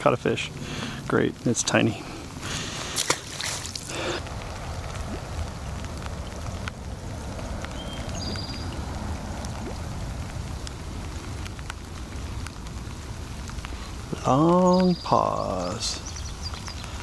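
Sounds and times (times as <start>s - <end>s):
rain falling: 0.0s - 17.0s
sharp ticks of raindrops: 0.0s - 17.0s
low rumble: 2.1s - 12.1s.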